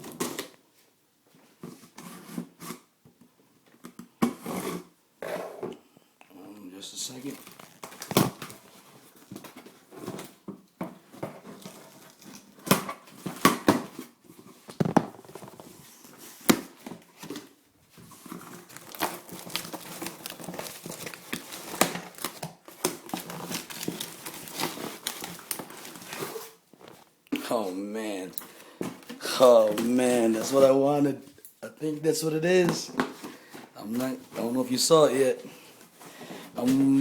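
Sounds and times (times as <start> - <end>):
packing material crinkling: 7.0 - 10.3, 11.4 - 13.1, 17.1 - 27.1.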